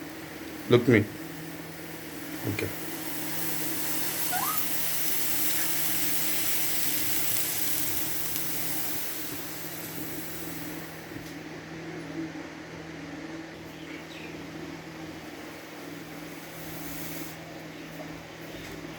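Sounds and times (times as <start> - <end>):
small electric motor humming: 0.0 - 11.0
food sizzling in a frying pan: 0.0 - 11.2.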